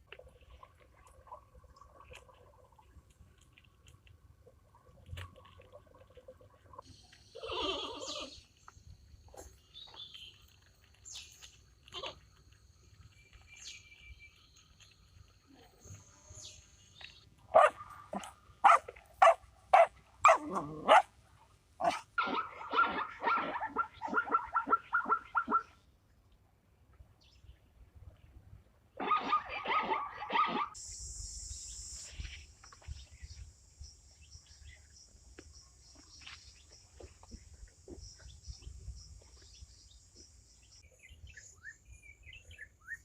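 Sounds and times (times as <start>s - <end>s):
dog barking: 17.5s - 21.1s, 21.8s - 25.7s, 29.0s - 30.8s
dog yapping: 17.6s - 21.1s, 29.0s - 30.8s.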